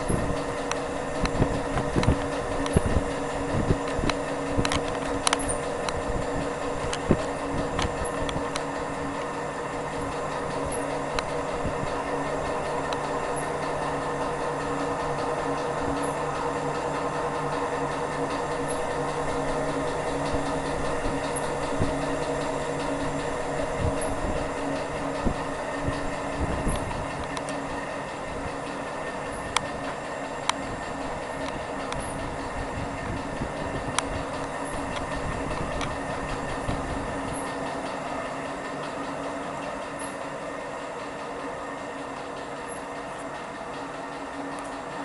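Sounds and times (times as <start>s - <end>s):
fan impeller humming: 0.0s - 45.0s.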